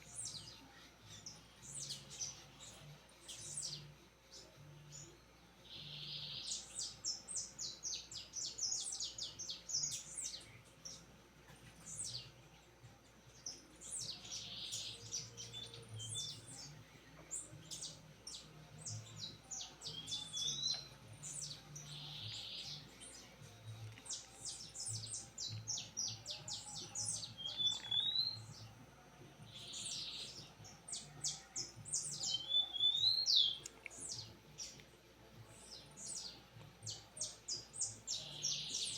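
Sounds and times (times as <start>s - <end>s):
songbird singing: 0.0s - 38.9s.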